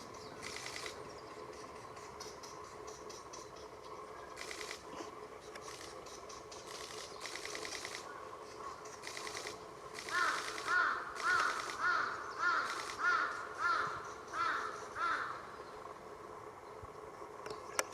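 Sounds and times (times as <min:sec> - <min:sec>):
woodpecker buzzy rattle: 0:00.0 - 0:15.5
woodpecker harsh calls: 0:05.6 - 0:15.7.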